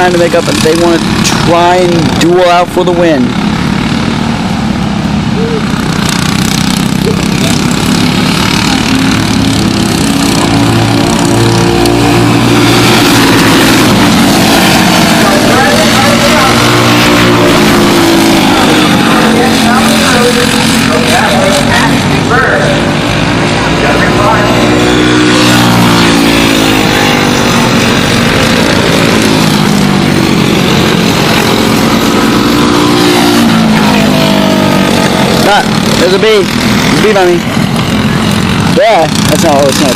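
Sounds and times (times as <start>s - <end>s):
kart engines racing: 0.0s - 39.9s.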